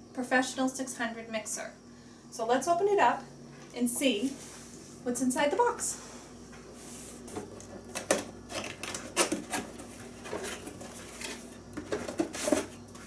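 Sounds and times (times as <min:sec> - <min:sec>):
cardboard packaging rustling: 0:07.2 - 0:13.0.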